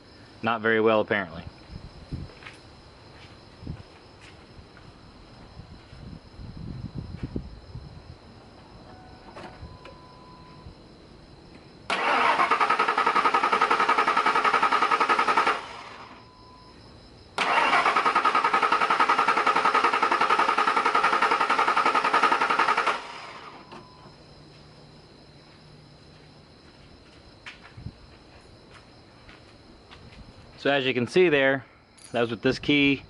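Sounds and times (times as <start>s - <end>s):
starter motor cranking: 11.9s - 16.1s, 17.4s - 23.6s.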